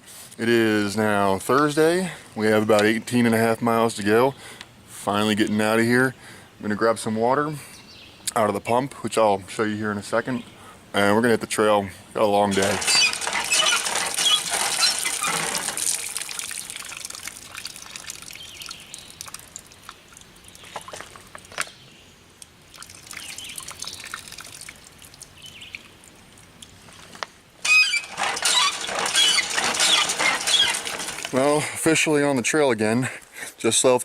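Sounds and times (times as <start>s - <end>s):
water pouring from pump spout: 12.5s - 21.6s, 22.4s - 31.7s.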